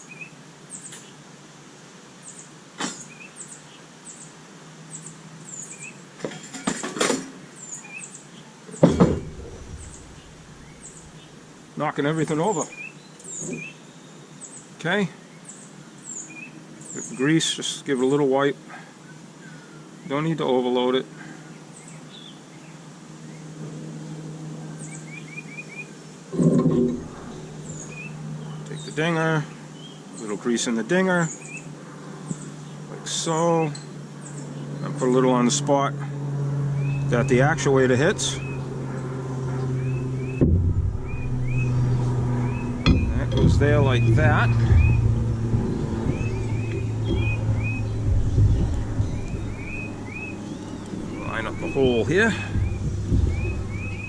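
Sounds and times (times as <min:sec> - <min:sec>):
small birds chirping: 0:00.0 - 0:01.3, 0:02.2 - 0:06.7, 0:07.5 - 0:54.0
hard objects knocking and clattering: 0:08.8 - 0:09.7
steady low hum: 0:08.8 - 0:11.8, 0:26.3 - 0:30.2, 0:31.8 - 0:54.0.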